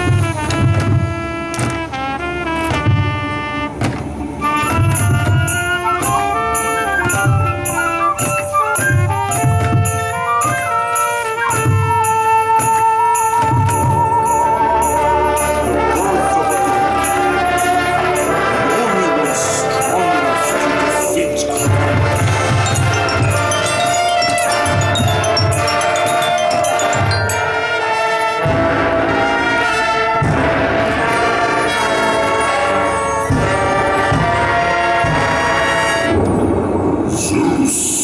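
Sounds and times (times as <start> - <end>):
sustained wind chords: 0.0 - 12.3, 13.1 - 37.2
marching band playing: 0.0 - 37.0
heavy accented band hits: 0.0 - 37.1
bright mallet percussion: 13.2 - 28.4.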